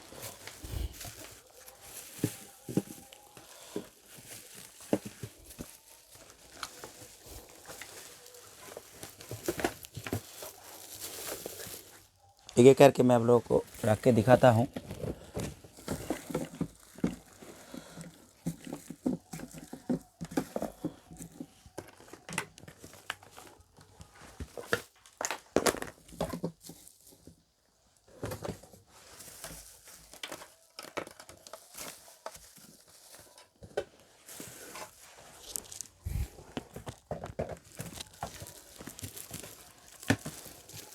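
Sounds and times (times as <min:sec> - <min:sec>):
paper and cardboard rustling: 0:00.0 - 0:27.4, 0:28.0 - 0:40.9
boxes knocking and clicking: 0:36.6 - 0:40.9.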